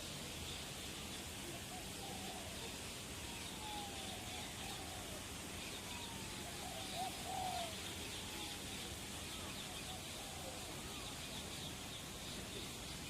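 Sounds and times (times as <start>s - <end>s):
background noise: 0.0s - 13.0s.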